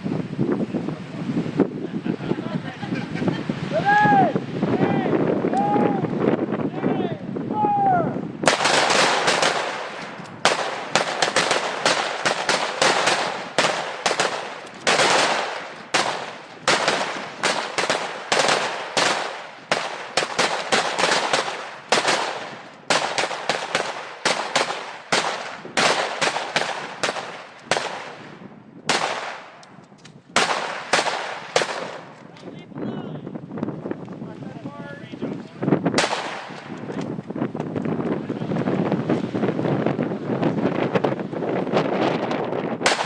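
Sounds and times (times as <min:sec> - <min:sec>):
rifle shots with echo: 0:08.4 - 0:29.6, 0:30.4 - 0:32.2, 0:36.0 - 0:36.7.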